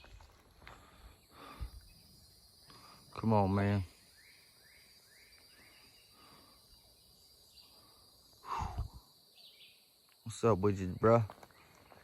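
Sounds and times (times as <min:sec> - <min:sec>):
high insect drone: 0:00.0 - 0:12.0.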